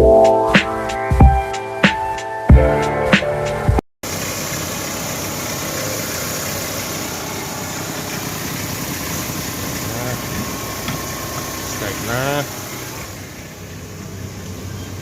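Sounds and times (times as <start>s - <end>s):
intro music: 0.0s - 3.8s
car engine idling: 4.0s - 15.0s.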